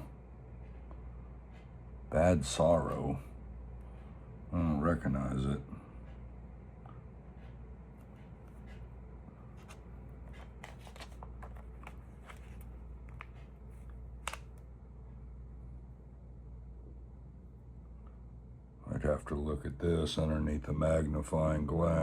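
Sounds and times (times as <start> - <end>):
low steady hum: 0.0 - 22.0
paper rustling: 9.5 - 14.5.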